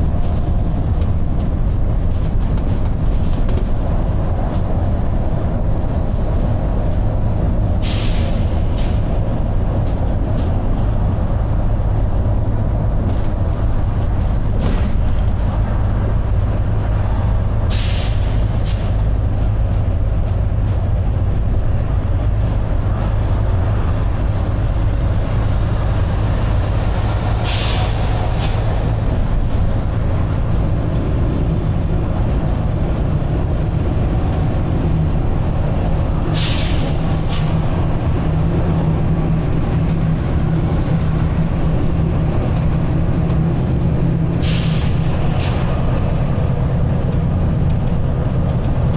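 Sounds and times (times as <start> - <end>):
bus diesel engine droning: 0.0 - 48.9
air hissing: 7.8 - 9.1, 17.7 - 19.0, 27.3 - 28.8, 36.3 - 37.7, 44.4 - 46.4.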